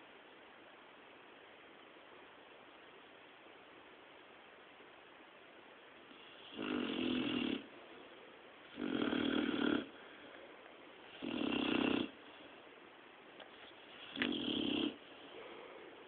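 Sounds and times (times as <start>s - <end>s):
dog snoring: 6.1s - 7.7s, 8.7s - 10.3s, 11.1s - 12.5s, 13.8s - 15.6s.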